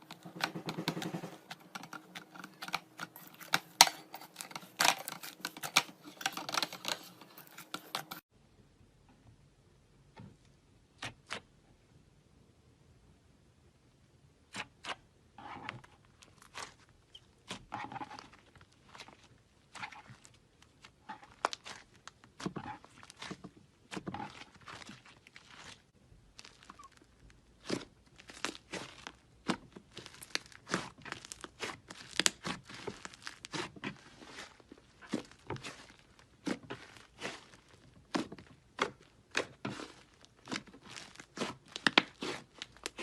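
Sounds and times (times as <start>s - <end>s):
slime squelching and popping: 16.2s - 43.0s.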